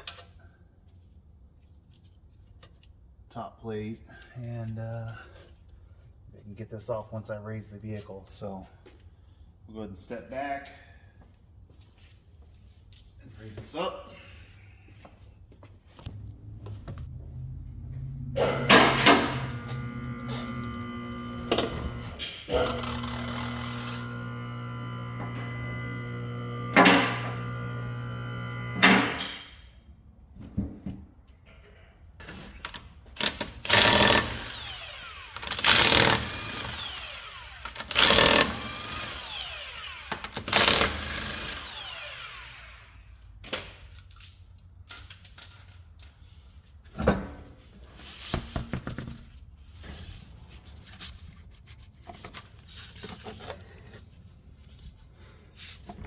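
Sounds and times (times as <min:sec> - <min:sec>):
impact wrench bursts: 0:18.4 - 0:29.2, 0:33.2 - 0:42.9
tools and parts clanking: 0:43.5 - 0:47.4.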